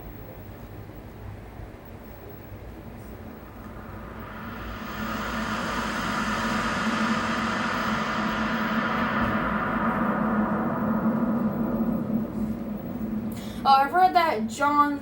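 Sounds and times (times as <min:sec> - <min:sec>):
steady hum: 0:00.0 - 0:15.0
tape hiss: 0:00.0 - 0:15.0
gong-like ringing tone: 0:03.0 - 0:15.0.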